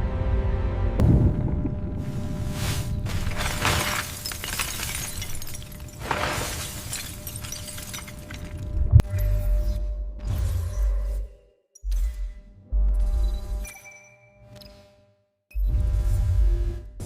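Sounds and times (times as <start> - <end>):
low thud: 1.0 - 2.3
crashing and crackling debris: 1.0 - 8.9.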